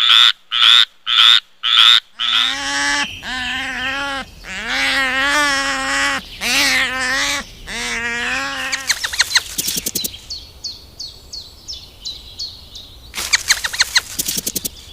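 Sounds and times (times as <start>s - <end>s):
bird chirping steadily: 0.0s - 14.9s
wavering animal calls: 1.8s - 10.1s, 13.2s - 14.7s
rattle of clicks: 8.8s - 10.2s, 13.2s - 14.8s.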